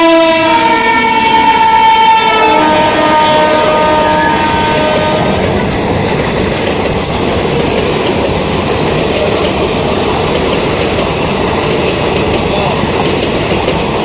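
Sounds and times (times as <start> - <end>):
dual-tone train horn: 0.0 - 5.6
train passing at speed: 0.0 - 14.0.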